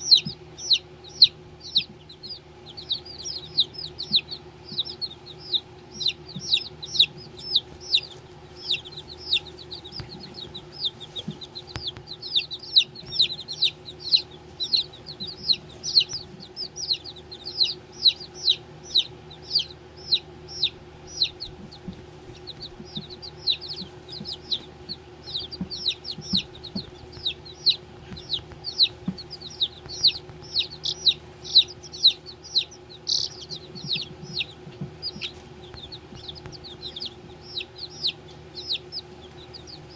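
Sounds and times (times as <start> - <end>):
baby chicks peeping: 0.0 - 39.9
faint steady hum: 0.0 - 39.9.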